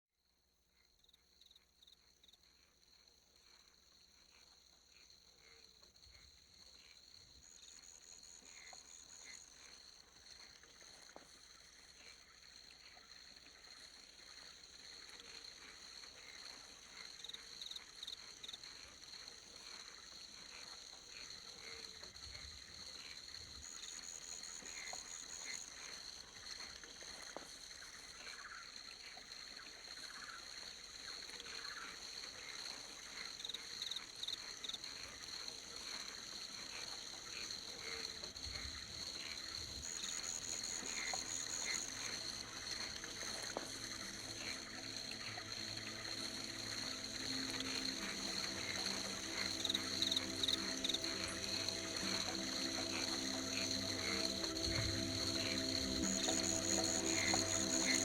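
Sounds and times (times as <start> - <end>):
insects trilling: 27.5 - 58.0.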